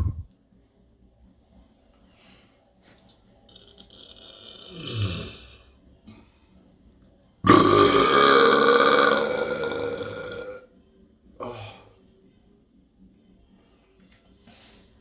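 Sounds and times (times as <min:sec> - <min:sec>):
low falling grunt: 0:00.0 - 0:00.2, 0:07.5 - 0:10.6
long loud burp: 0:03.5 - 0:05.7, 0:07.4 - 0:10.7.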